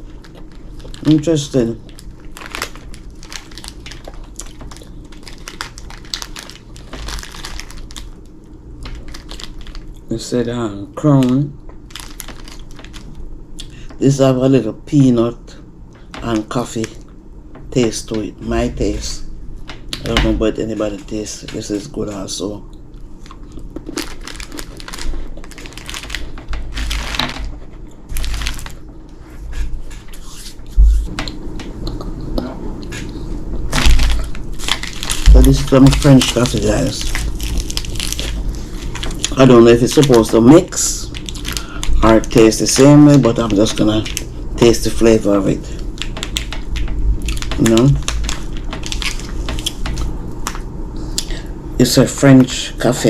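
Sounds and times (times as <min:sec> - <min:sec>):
plastic wrapper crinkling: 0:00.0 - 0:10.1, 0:11.2 - 0:13.2, 0:23.0 - 0:29.2, 0:33.6 - 0:50.6
snack packaging crackling: 0:00.0 - 0:10.2, 0:10.8 - 0:13.8, 0:18.9 - 0:32.1, 0:32.8 - 0:51.4.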